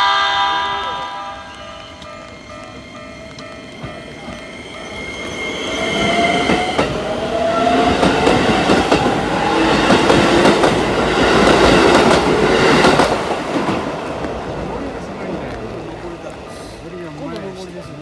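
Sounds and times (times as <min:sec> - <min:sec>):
electric train motor whine: 0:00.0 - 0:10.3.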